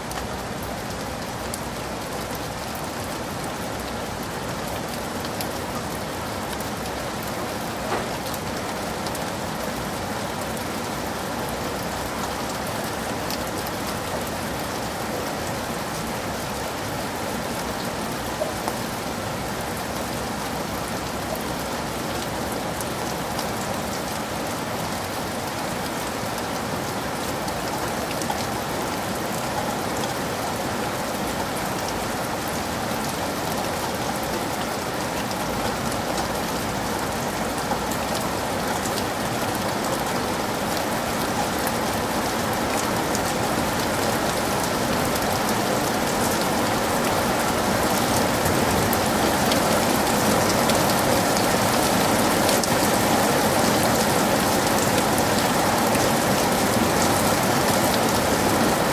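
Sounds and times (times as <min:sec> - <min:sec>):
heavy rain falling: 0:00.0 - 0:58.9.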